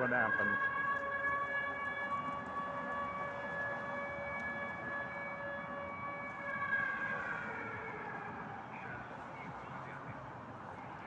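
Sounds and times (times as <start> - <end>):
air raid siren wailing: 0.7 - 8.2.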